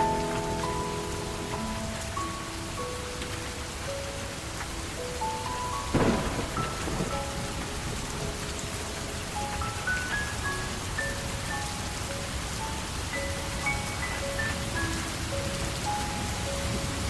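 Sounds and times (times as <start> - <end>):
rain falling: 0.0 - 17.0
slow piano notes: 0.0 - 17.0
thunderclap rumbling: 5.4 - 10.9.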